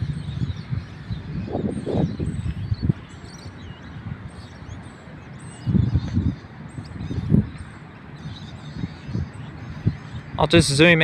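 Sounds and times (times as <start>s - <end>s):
storm rumble in gusts: 0.0s - 4.8s, 5.6s - 7.7s
small birds chirping faintly: 0.0s - 11.0s.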